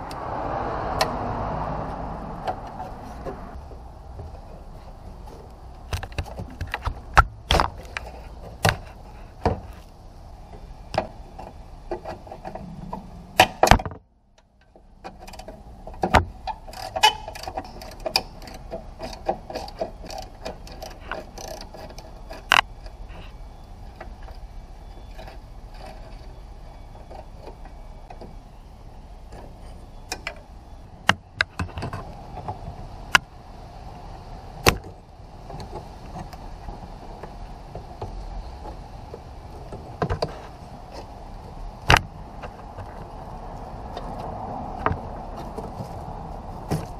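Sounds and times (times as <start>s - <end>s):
low steady background noise: 0.0s - 46.9s
sharp clicks and knocks: 5.9s - 9.9s, 10.5s - 23.3s.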